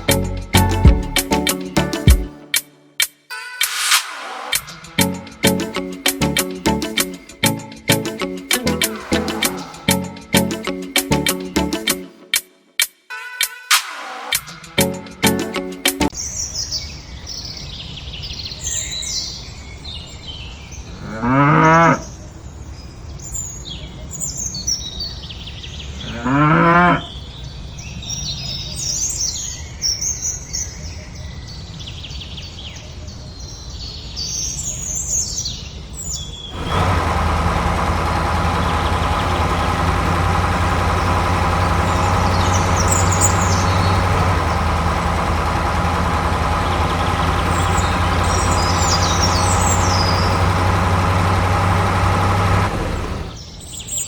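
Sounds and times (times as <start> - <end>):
tractor engine idling: 0.0 - 2.3, 4.7 - 11.9, 13.7 - 15.6, 36.6 - 53.4
cow mooing: 26.0 - 27.1
birds chirping: 36.2 - 54.0.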